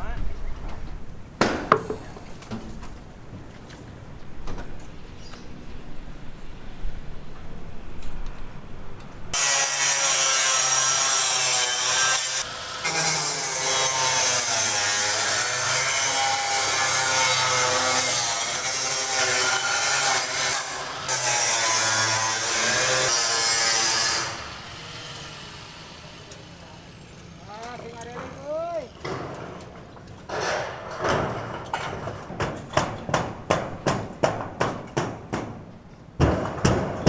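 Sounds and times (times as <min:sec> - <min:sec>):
power tool cutting: 0:09.4 - 0:27.2.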